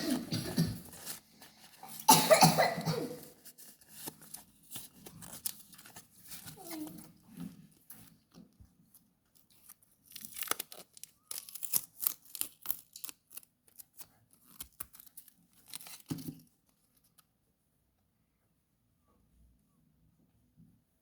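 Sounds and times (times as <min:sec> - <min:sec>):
packaging tearing and crinkling: 0:03.4 - 0:07.2, 0:09.4 - 0:16.5.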